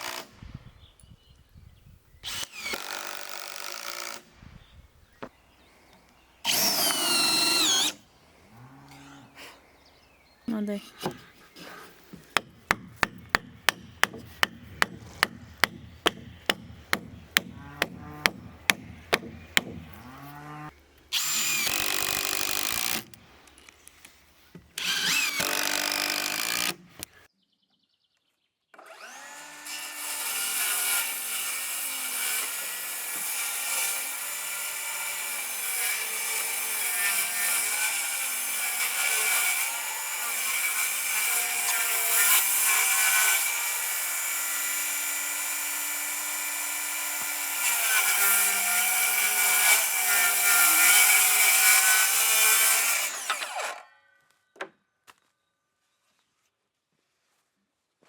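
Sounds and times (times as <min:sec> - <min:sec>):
power tool working wood: 0:00.0 - 0:00.4, 0:06.4 - 0:08.1, 0:12.1 - 0:23.2, 0:24.8 - 0:26.8, 0:28.8 - 0:53.8
sharp knocks: 0:12.1 - 0:20.0.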